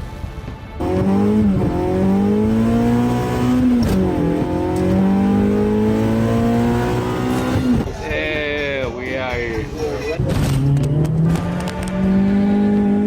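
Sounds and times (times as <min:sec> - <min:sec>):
car engine accelerating hard: 0:00.8 - 0:08.0, 0:10.2 - 0:13.0.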